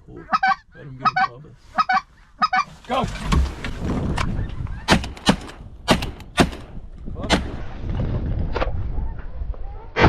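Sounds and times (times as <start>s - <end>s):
shotgun shots: 4.9s - 7.6s.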